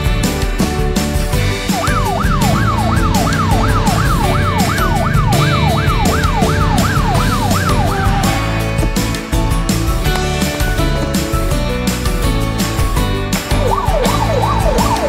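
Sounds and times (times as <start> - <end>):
background music: 0.0 - 15.0
fire truck siren yelping: 1.7 - 8.7, 13.5 - 15.0.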